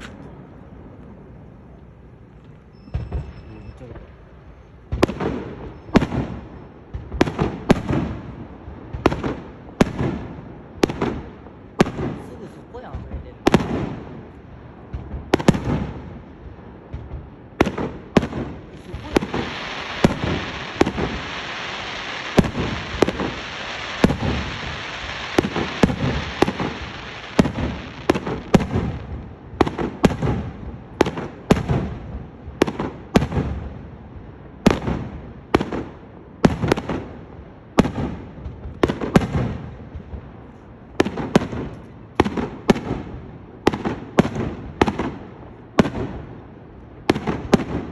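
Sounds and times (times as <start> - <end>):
fireworks bangs: 0.0 - 47.9
fireworks hiss: 17.7 - 31.9.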